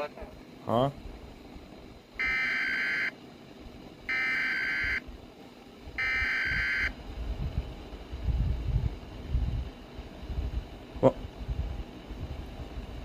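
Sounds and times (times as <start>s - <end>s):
high electronic alert tone bursts: 2.2s - 3.1s, 4.1s - 5.0s, 6.0s - 6.9s.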